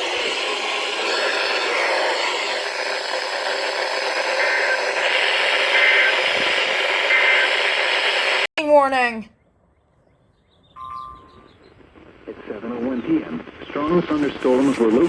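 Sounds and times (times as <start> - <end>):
radio static hiss: 0.0 - 8.5, 11.1 - 15.0
faint short beeps: 10.8 - 11.6.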